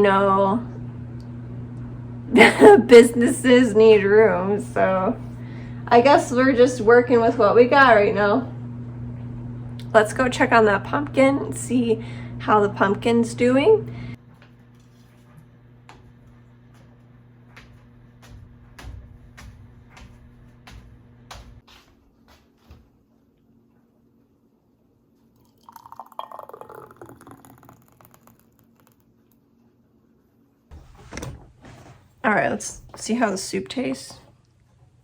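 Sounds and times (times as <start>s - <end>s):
low steady hum: 0.0s - 21.6s
liquid pouring splash: 25.4s - 29.0s.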